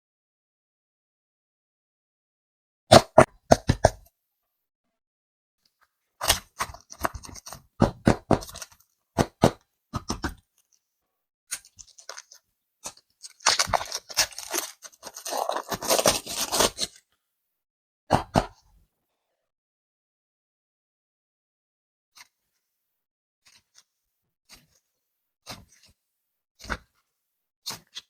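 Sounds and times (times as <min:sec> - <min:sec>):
packaging crinkling and crackling: 0:11.6 - 0:17.0.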